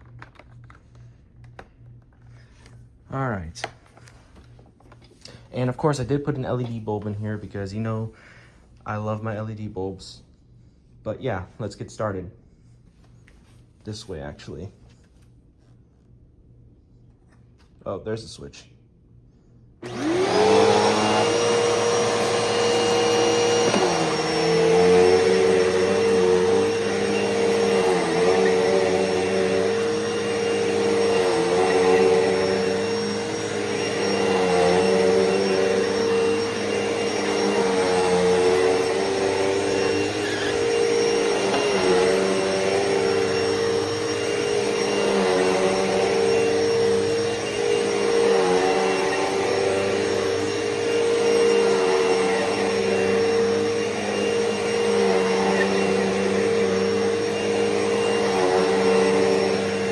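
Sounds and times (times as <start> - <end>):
vacuum cleaner motor whine: 19.8 - 59.9.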